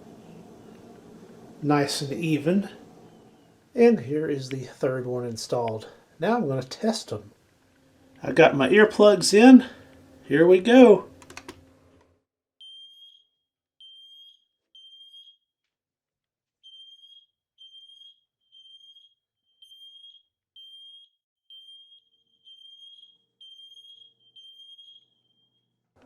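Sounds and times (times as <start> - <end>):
high-pitched alarm beeps: 12.6 - 15.4, 16.7 - 25.7.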